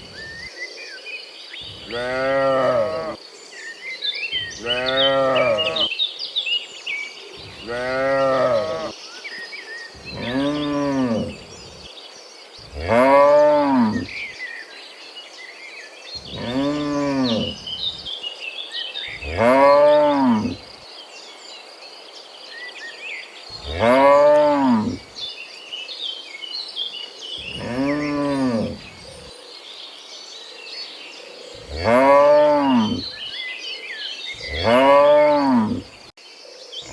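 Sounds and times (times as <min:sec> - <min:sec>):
bird chirps: 0:00.0 - 0:21.2, 0:22.5 - 0:36.9
high insect buzz: 0:01.6 - 0:03.3, 0:09.9 - 0:14.4, 0:16.2 - 0:18.2
cattle mooing: 0:01.7 - 0:03.2, 0:04.4 - 0:05.9, 0:07.4 - 0:08.9, 0:10.0 - 0:11.8, 0:12.7 - 0:14.2, 0:16.2 - 0:18.1, 0:19.2 - 0:20.7, 0:23.6 - 0:25.0, 0:27.4 - 0:29.0, 0:31.6 - 0:33.2, 0:34.4 - 0:35.9.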